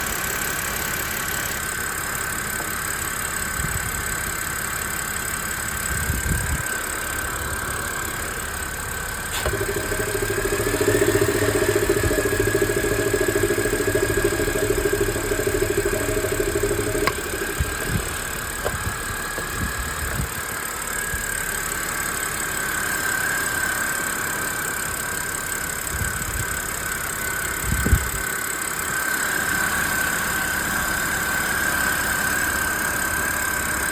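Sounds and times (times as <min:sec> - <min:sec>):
car engine idling roughly: 0:00.0 - 0:33.9
low droning: 0:05.9 - 0:26.8
high-pitched whine: 0:06.0 - 0:28.2.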